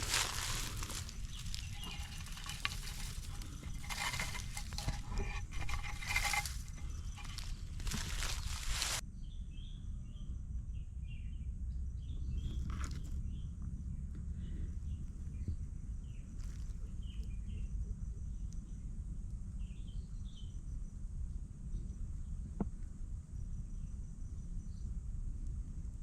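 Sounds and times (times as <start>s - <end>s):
rustling in dry leaves: 0.0s - 9.0s.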